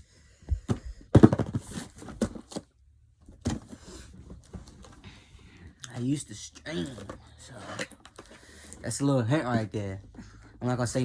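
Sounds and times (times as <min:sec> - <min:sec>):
parts clattering: 0:00.4 - 0:05.0.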